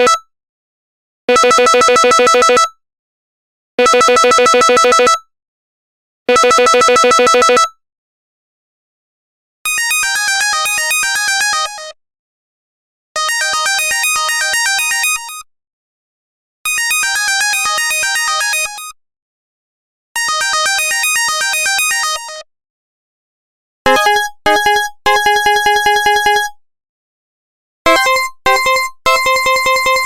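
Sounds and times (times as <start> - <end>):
phone ringtone synthesizer melody: 23.9 - 26.6, 27.9 - 30.0.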